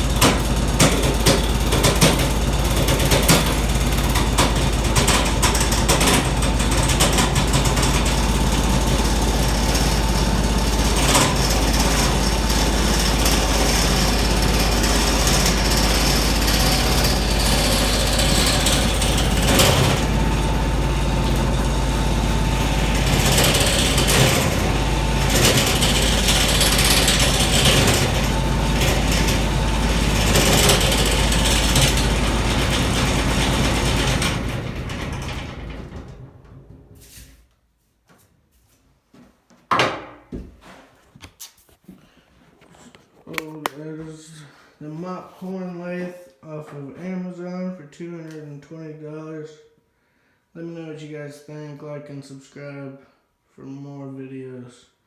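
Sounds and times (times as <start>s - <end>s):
turning tool scraping wood: 0.0s - 34.6s, 41.5s - 43.8s
wood lathe motor hum: 0.0s - 36.4s.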